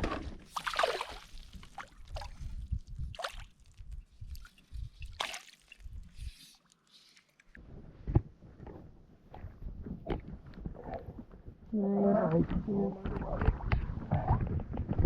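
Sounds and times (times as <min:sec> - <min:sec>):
water splashing and dripping: 0:00.5 - 0:07.6.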